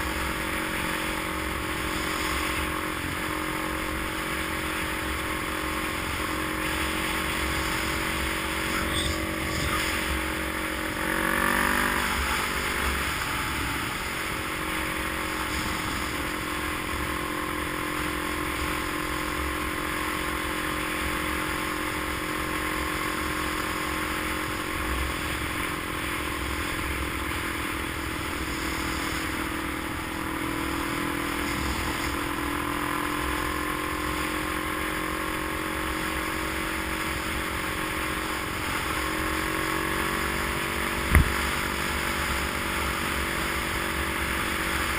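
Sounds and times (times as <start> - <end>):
road noise rumble: 0.0 - 20.0, 34.6 - 44.9
vehicle engine hum: 0.0 - 44.9.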